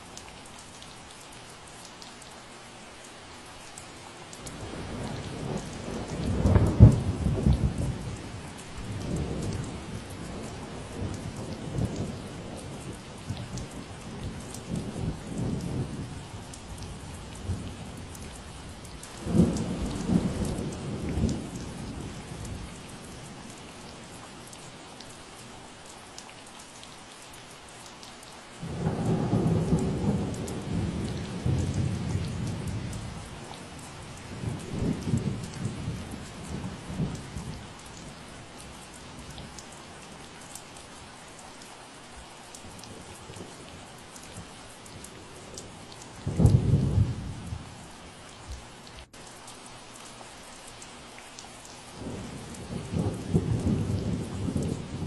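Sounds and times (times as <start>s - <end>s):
steady rain: 0.0s - 55.0s
deep thunder rumbles: 19.2s - 22.8s, 28.6s - 37.6s, 46.2s - 47.8s, 52.0s - 55.0s.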